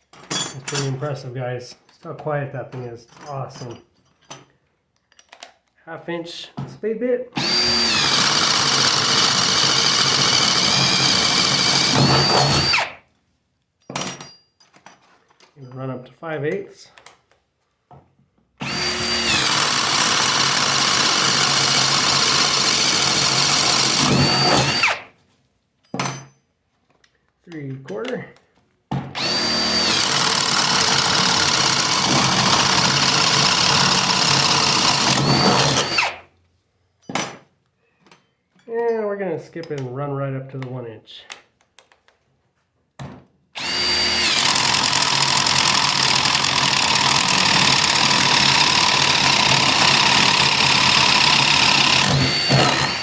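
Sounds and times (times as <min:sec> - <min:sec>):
drill bit cutting wood: 0:07.4 - 0:13.0, 0:18.6 - 0:25.1, 0:29.2 - 0:36.2, 0:43.6 - 0:53.0
power driver motor whine: 0:07.4 - 0:13.0, 0:18.6 - 0:25.1, 0:29.2 - 0:36.2, 0:43.6 - 0:53.0.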